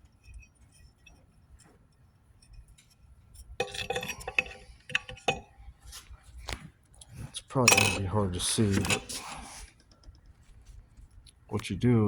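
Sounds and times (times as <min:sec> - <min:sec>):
metal parts clinking: 0:03.6 - 0:05.4, 0:07.6 - 0:09.4.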